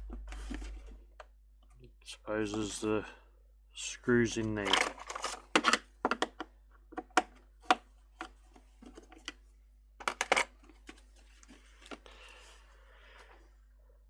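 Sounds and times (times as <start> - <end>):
hard plastic clicks and taps: 4.7 - 9.4.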